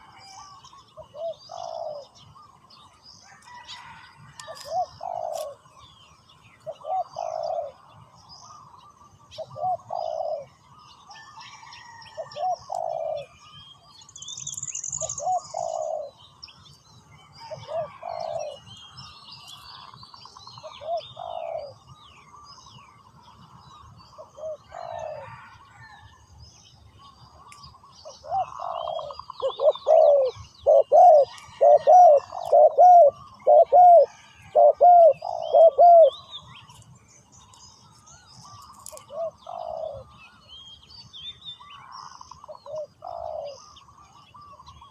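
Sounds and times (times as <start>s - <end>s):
dove cooing: 0.0s - 2.5s, 3.5s - 5.6s, 6.7s - 7.9s, 9.3s - 10.6s, 11.6s - 13.4s, 15.0s - 16.2s, 17.4s - 18.6s, 20.6s - 21.8s, 24.1s - 25.5s, 28.1s - 36.2s, 38.6s - 40.2s, 42.0s - 44.1s
small birds chirping faintly: 0.0s - 44.9s.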